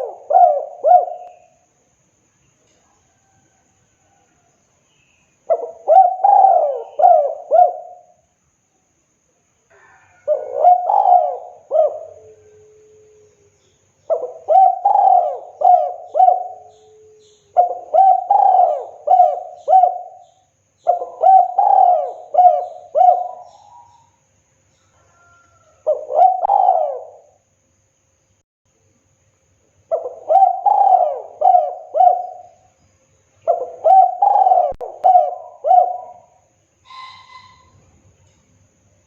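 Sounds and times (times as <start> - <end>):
dove cooing: 0.0 - 1.6, 5.5 - 8.2, 9.7 - 13.3, 14.1 - 24.1, 25.1 - 27.4, 29.9 - 32.7, 33.4 - 37.7.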